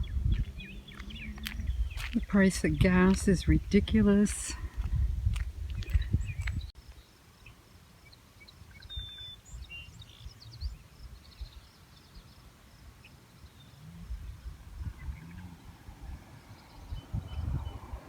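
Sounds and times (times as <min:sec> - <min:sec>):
low rumbling noise: 0:00.0 - 0:06.7
faint bird chirps: 0:05.9 - 0:15.8.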